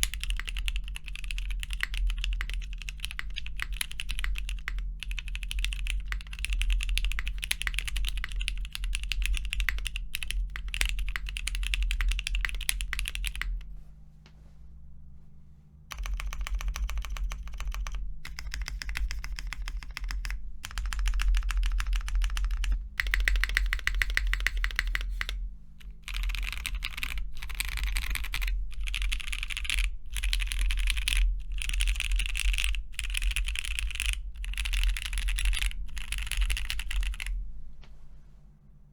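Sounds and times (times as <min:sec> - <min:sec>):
fast mechanical keyboard typing: 0:00.0 - 0:13.6, 0:15.9 - 0:37.4
low steady hum: 0:00.0 - 0:38.9.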